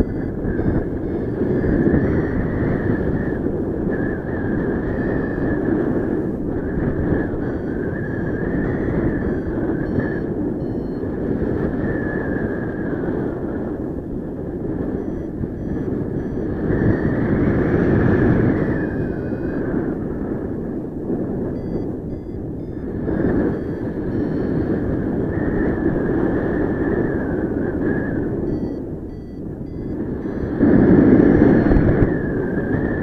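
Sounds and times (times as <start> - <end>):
short high electronic beeps: 0.0 - 2.3, 7.4 - 11.0, 15.0 - 17.3, 21.6 - 24.7, 28.5 - 30.6
airflow rushing over microphone: 0.0 - 33.0.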